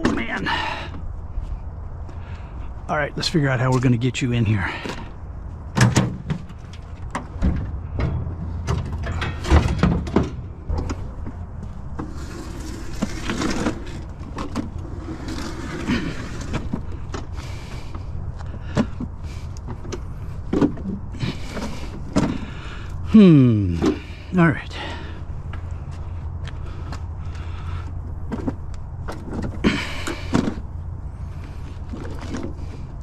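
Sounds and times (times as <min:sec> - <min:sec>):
knocks and clunks: 0:00.0 - 0:00.6, 0:05.7 - 0:12.2, 0:15.7 - 0:22.6, 0:23.7 - 0:24.3, 0:28.2 - 0:30.7
scooter scraping and sliding: 0:10.7 - 0:22.6, 0:28.2 - 0:33.0.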